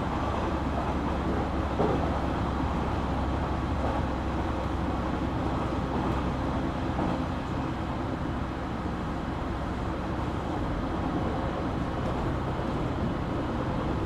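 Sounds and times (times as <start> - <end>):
train wheels rumbling on rail: 0.0 - 14.0.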